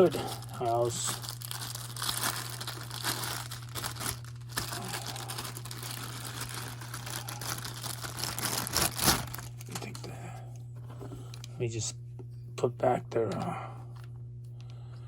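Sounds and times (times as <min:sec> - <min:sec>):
plastic packaging crinkling: 0:00.0 - 0:10.1
low electrical hum: 0:00.0 - 0:15.0.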